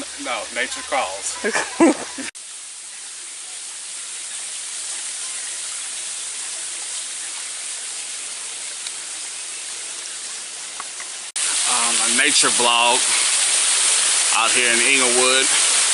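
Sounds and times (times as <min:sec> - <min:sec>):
falling water rushing: 0:00.0 - 0:15.9.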